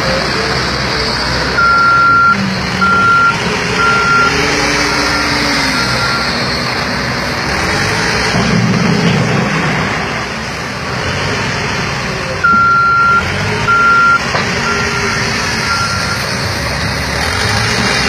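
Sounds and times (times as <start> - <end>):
engines running: 0.0 - 18.0
reversing alarm beeping: 1.6 - 6.6, 12.4 - 16.4.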